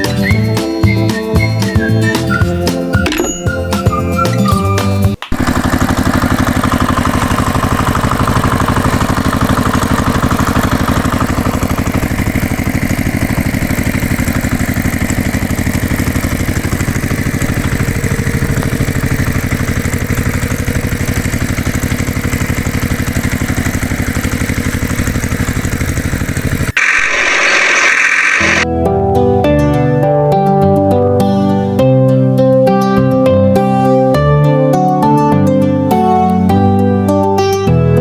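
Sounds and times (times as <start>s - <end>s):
small engine chugging: 5.3s - 28.6s.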